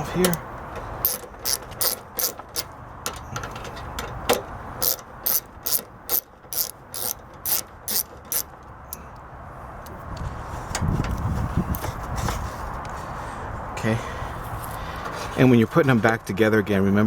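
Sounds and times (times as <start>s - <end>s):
ratchet tool clicking: 1.0s - 9.2s.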